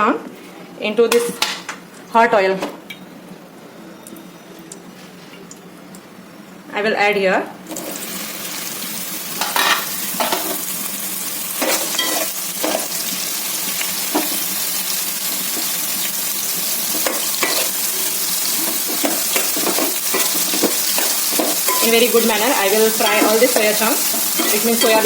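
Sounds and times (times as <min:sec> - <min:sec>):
food sizzling in hot oil: 0:07.7 - 0:25.0
spoon scraping against pan: 0:18.5 - 0:25.0.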